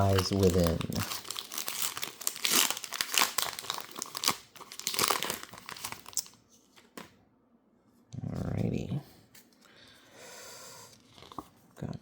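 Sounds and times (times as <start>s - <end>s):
foil wrapper crinkling and tearing: 0.0s - 6.4s.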